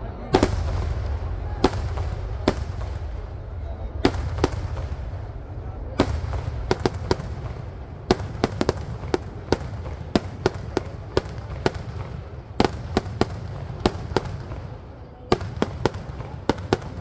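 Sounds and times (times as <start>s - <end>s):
low rumble: 0.0s - 8.6s
firecracker bangs: 0.3s - 17.0s.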